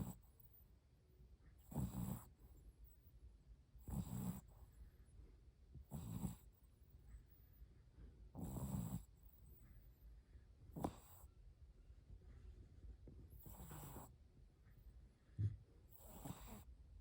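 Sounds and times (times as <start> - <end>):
puppy snoring: 0.0 - 0.6, 1.6 - 3.0, 3.8 - 4.8, 5.7 - 7.4, 8.3 - 9.9, 10.7 - 11.3, 13.3 - 14.2, 15.4 - 16.7.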